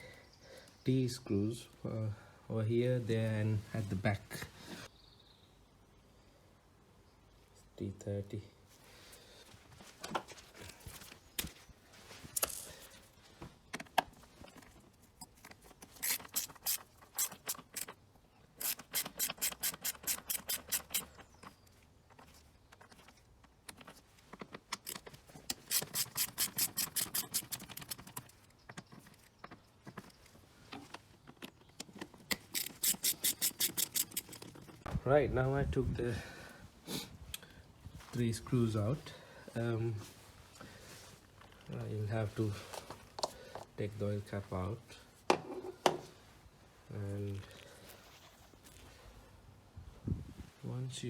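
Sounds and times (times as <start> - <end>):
ratchet wrench clicking: 16.0 - 18.0, 18.6 - 21.1, 24.8 - 28.2, 32.3 - 34.6.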